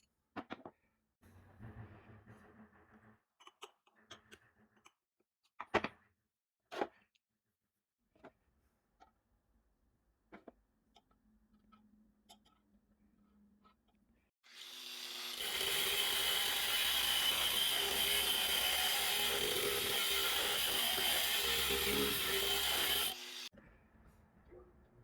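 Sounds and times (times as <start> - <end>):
power tool running with whine: 14.5 - 23.5.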